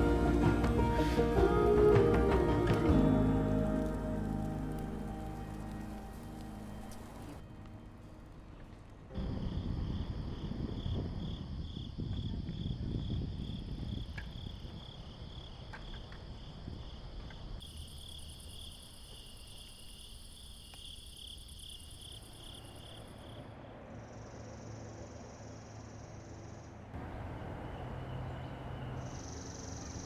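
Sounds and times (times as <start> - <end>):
crickets and insects trilling: 9.2 - 26.9, 28.7 - 30.0
higher-pitched insect trill: 17.6 - 23.4.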